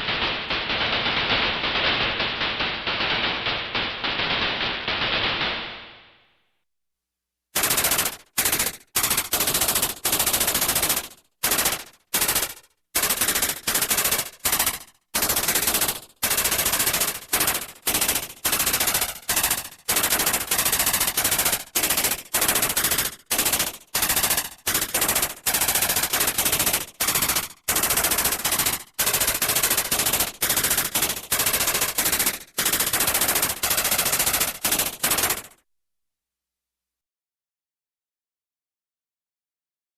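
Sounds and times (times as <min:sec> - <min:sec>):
electronic weapon firing rapidly: 0:00.0 - 0:06.2, 0:07.6 - 0:35.6.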